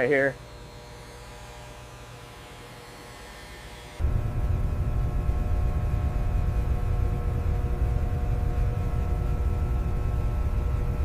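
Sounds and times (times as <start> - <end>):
deep engine rumble: 4.0 - 11.0.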